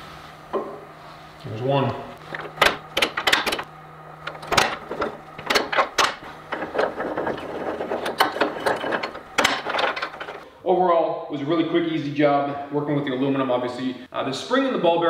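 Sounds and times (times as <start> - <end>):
low steady hum: 0.0 - 15.0
metal clicks and clanks: 2.2 - 10.4.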